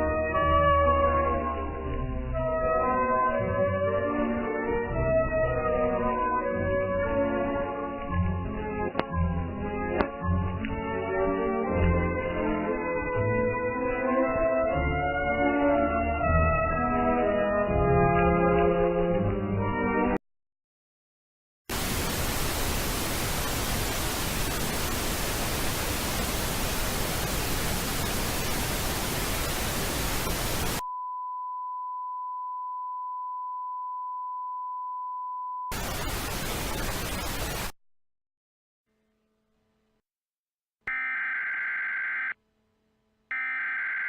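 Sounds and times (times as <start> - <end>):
white noise static hiss: 21.7 - 30.8, 35.7 - 37.8.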